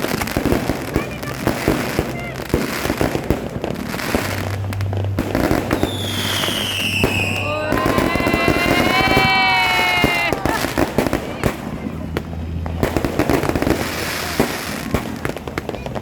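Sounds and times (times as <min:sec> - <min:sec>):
fireworks popping and crackling: 0:00.0 - 0:16.0
firework whistle sliding down: 0:05.5 - 0:10.6
steady whistling tone: 0:05.7 - 0:09.3.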